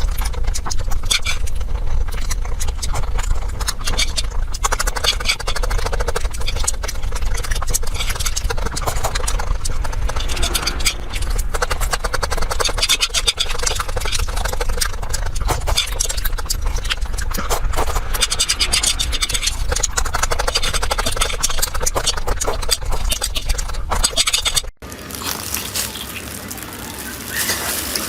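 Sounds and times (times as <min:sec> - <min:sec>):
close chewing crunches: 0:00.0 - 0:28.0.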